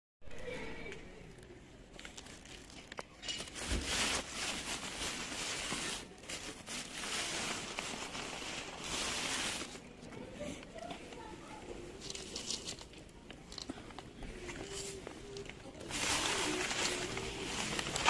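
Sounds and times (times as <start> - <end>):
plastic packaging crinkling: 1.9 - 9.9, 12.0 - 13.7, 14.6 - 18.0.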